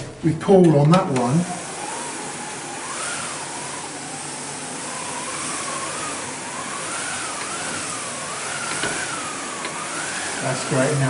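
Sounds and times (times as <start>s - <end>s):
hand-cranked wind machine: 5.2s - 11.0s.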